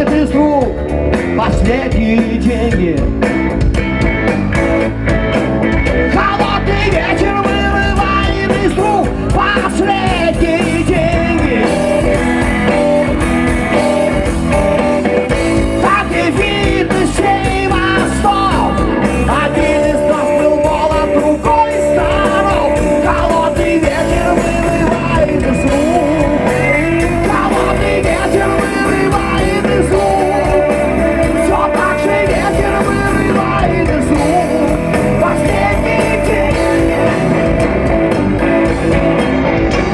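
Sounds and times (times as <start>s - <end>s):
guitar: 0.0s - 39.9s
rock band playing live: 0.0s - 39.9s
person singing: 6.1s - 14.6s, 15.5s - 37.9s.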